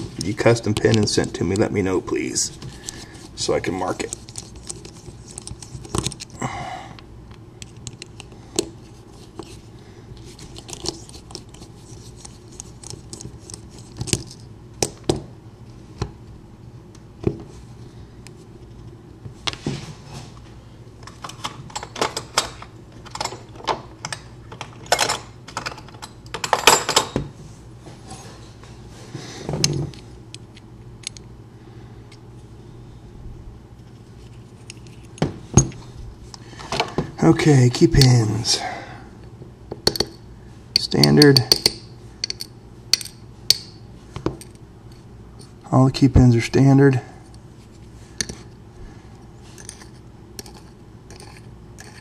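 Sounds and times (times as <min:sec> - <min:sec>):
small metal lock parts clicking: 0:30.3 - 0:31.3, 0:40.8 - 0:43.7.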